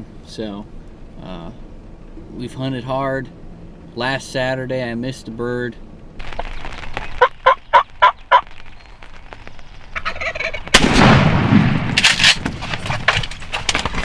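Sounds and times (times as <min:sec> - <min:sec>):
turkey gobbling: 0:06.2 - 0:08.9, 0:09.5 - 0:10.7
shotgun blast: 0:10.7 - 0:12.4.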